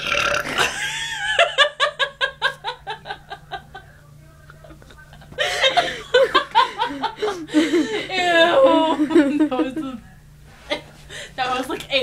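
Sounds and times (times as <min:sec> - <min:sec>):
person giggling: 0:00.5 - 0:03.9, 0:04.5 - 0:09.9.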